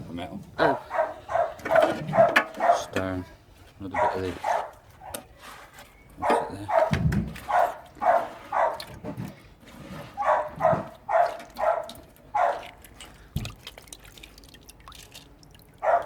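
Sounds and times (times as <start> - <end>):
dog barking: 0.6 - 3.0, 3.9 - 5.2, 6.2 - 8.9, 10.2 - 12.8.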